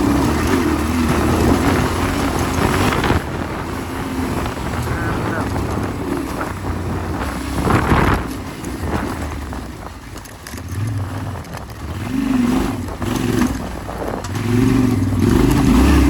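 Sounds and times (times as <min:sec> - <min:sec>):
motorcycle engine revving: 0:00.0 - 0:16.0.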